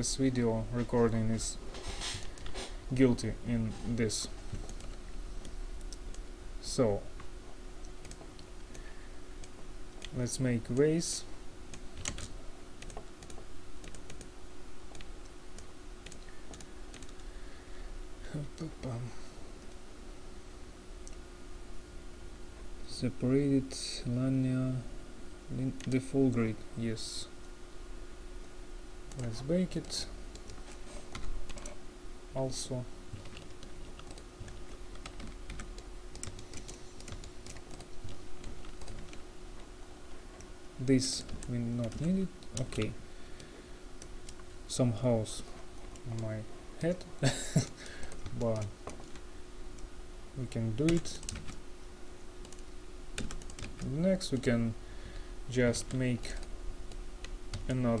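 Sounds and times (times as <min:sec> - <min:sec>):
faint steady hum: 0:00.0 - 0:58.0
computer keyboard typing: 0:04.5 - 0:06.2, 0:07.8 - 0:10.2, 0:11.7 - 0:14.3, 0:14.9 - 0:17.3, 0:29.1 - 0:31.8, 0:33.1 - 0:39.7, 0:40.3 - 0:44.5, 0:50.8 - 0:51.6, 0:52.4 - 0:52.6, 0:53.2 - 0:54.4, 0:55.8 - 0:57.8.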